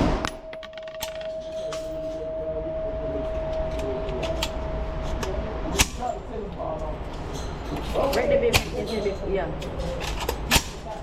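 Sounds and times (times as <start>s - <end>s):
high-pitched whine: 0.0s - 6.8s.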